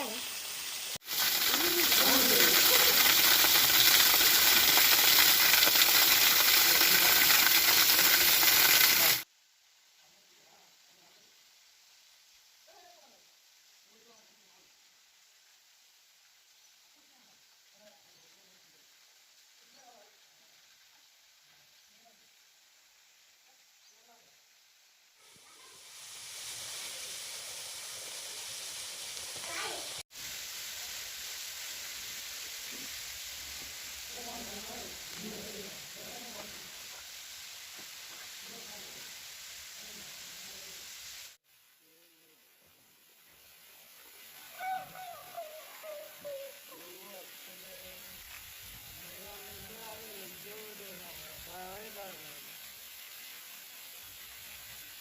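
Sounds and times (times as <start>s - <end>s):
waterfall rushing: 1.0s - 9.3s.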